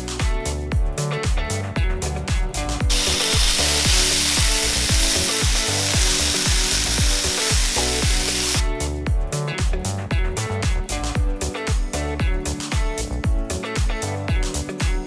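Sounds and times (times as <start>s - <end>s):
background music with beat: 0.0s - 15.0s
chicken sizzling in a pan: 2.9s - 8.7s.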